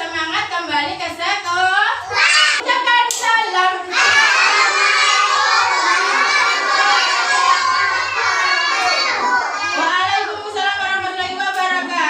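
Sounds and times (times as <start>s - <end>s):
children shouting and chattering: 2.0s - 2.9s, 3.6s - 11.5s.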